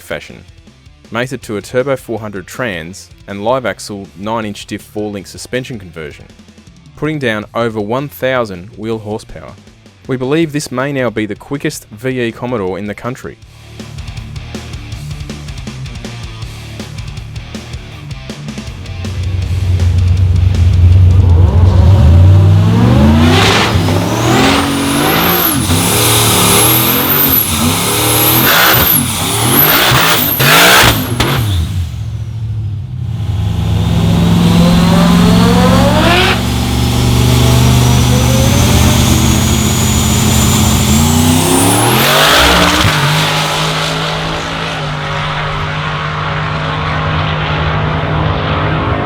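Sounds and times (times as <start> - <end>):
turbocharged car engine revving: 13.6 - 49.0.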